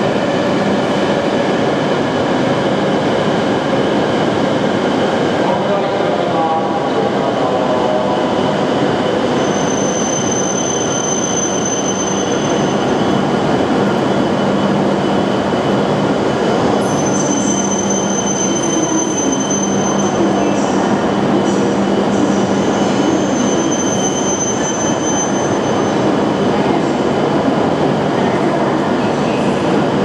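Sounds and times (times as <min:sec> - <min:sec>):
train wheels rumbling on rail: 0:00.0 - 0:30.0
high-pitched brake squeal: 0:09.3 - 0:12.9, 0:16.8 - 0:20.6, 0:22.2 - 0:26.0.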